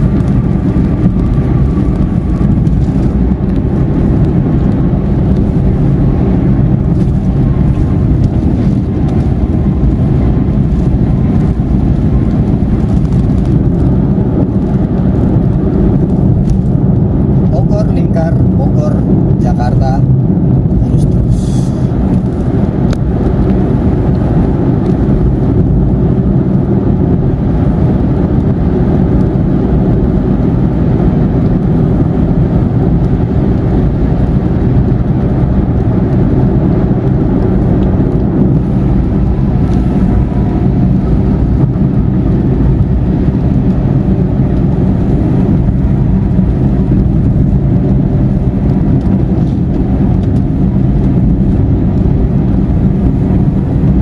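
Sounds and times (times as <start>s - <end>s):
car road and engine noise: 0.0s - 54.0s.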